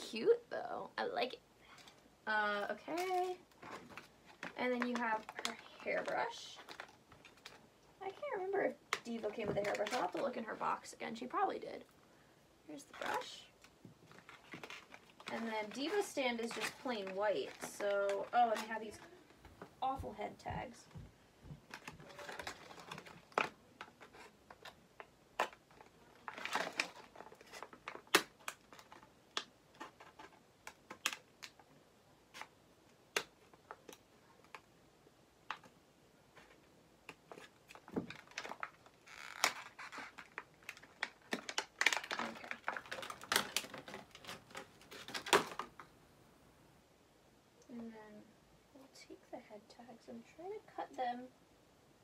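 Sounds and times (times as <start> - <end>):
plastic packaging crinkling: 2.6 - 7.7, 12.9 - 19.3, 21.7 - 31.7, 36.3 - 45.9.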